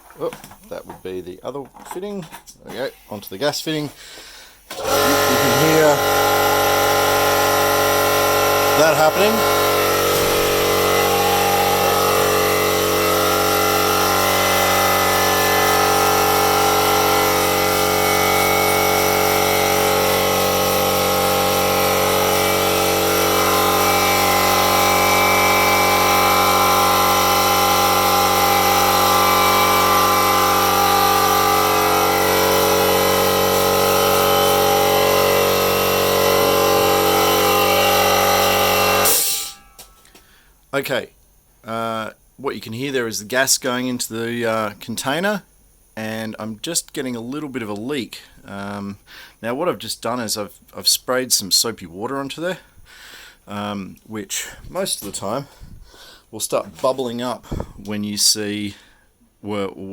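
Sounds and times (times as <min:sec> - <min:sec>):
compressed air hissing: 0:03.9 - 0:40.6, 0:52.6 - 0:53.5, 0:54.3 - 0:56.4.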